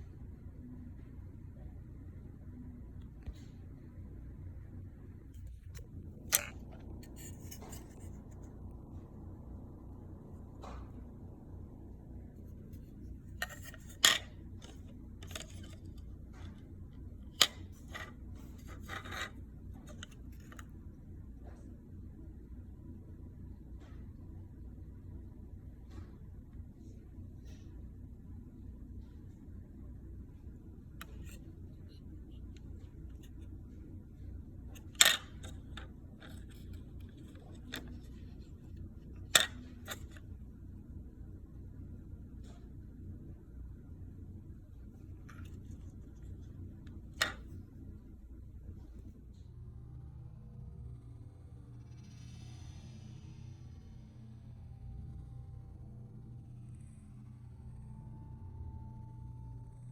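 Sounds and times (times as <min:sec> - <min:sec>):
low steady hum: 0:00.0 - 0:59.9
tools and small parts handled: 0:05.4 - 0:08.3, 0:12.7 - 0:16.6, 0:17.3 - 0:20.7, 0:34.7 - 0:40.2, 0:47.0 - 0:47.5.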